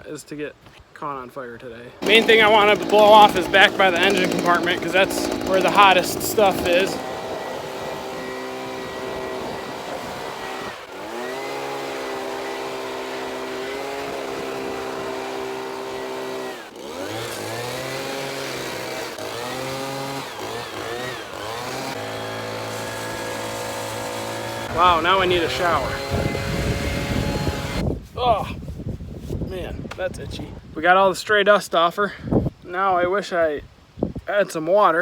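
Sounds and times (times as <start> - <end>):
leaf blower running: 2.0 - 27.8.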